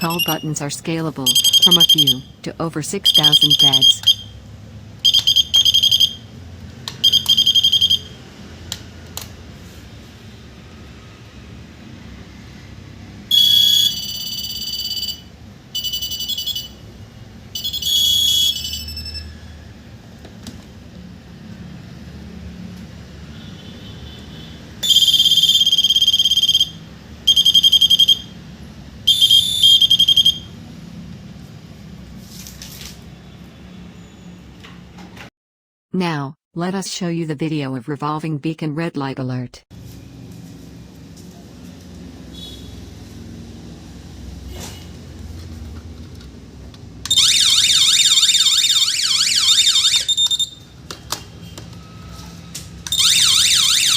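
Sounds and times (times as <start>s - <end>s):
shrill electronic alert buzzer: 0.0s - 4.3s, 47.1s - 50.6s, 52.9s - 53.9s.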